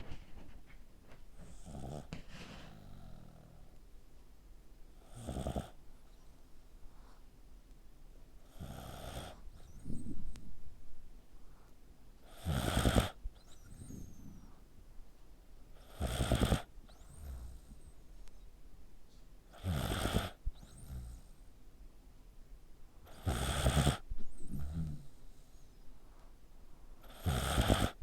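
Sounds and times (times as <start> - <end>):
quiet breathing: 0.0 - 3.9, 4.9 - 7.6, 8.2 - 21.8, 23.0 - 28.0
pet snoring: 1.4 - 3.7, 5.0 - 5.8, 8.4 - 10.2, 12.2 - 14.5, 15.8 - 17.8, 19.5 - 21.4, 23.0 - 25.2, 27.0 - 28.0.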